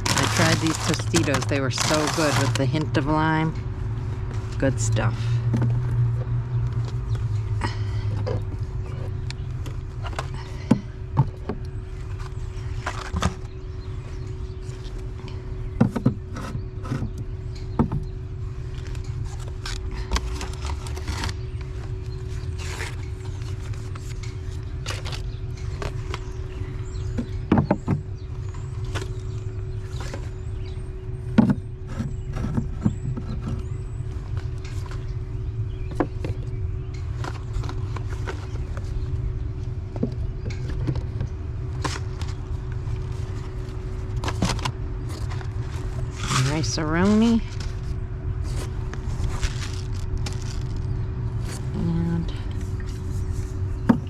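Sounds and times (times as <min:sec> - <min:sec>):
steady low hum: 0:00.0 - 0:54.0.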